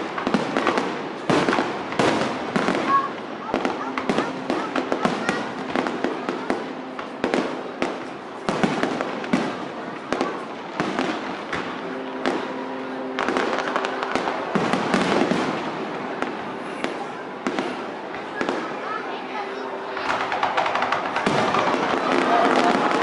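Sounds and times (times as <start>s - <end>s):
fireworks bangs: 0.0s - 23.0s
fireworks crackling: 0.0s - 23.0s.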